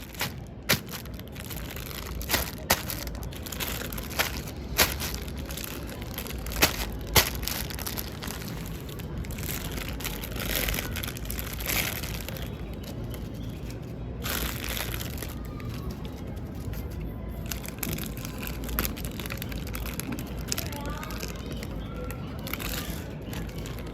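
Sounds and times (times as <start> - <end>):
sharp cracks: 0.0 - 12.4
plastic packaging crinkling: 0.0 - 23.9.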